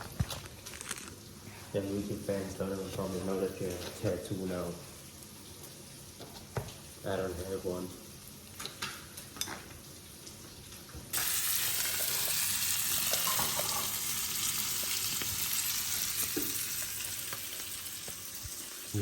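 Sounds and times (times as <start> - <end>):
food sizzling in a hot pan: 4.3 - 19.0.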